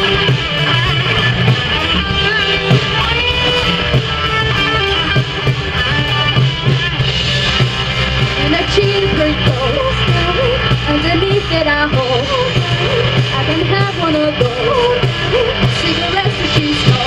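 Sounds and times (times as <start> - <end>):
electric guitar: 0.0 - 17.0
live rock band playing: 0.0 - 17.0.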